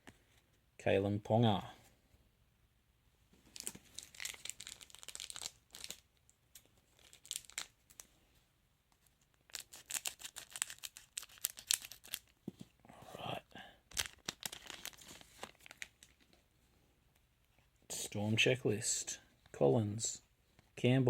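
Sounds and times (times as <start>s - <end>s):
wrapper tearing and crinkling: 3.5s - 6.0s, 6.9s - 8.0s, 9.5s - 12.4s, 13.9s - 16.2s.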